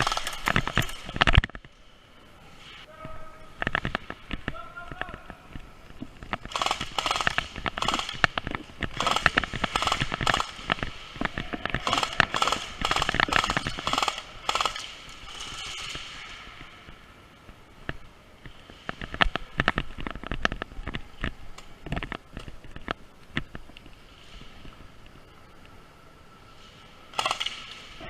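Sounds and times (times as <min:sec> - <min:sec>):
airsoft guns firing full-auto: 0:00.0 - 0:01.0, 0:06.5 - 0:10.7, 0:11.8 - 0:16.2, 0:27.2 - 0:27.8.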